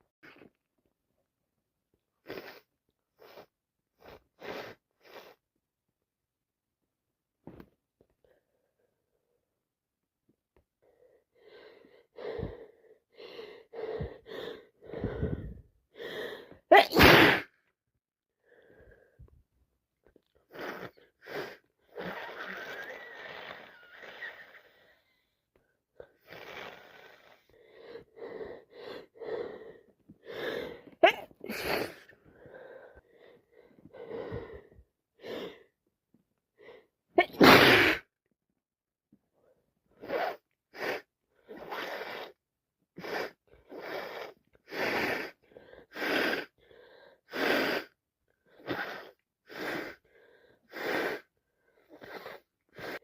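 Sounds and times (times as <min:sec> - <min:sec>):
short sniffs: 0:02.2 - 0:05.4, 0:40.0 - 0:42.4, 0:43.0 - 0:46.5, 0:48.6 - 0:50.0, 0:50.7 - 0:51.3, 0:51.9 - 0:53.0
woman snuffling: 0:02.2 - 0:05.4, 0:30.3 - 0:32.1
woman sneezing: 0:16.7 - 0:17.5, 0:31.0 - 0:32.1, 0:37.2 - 0:38.1.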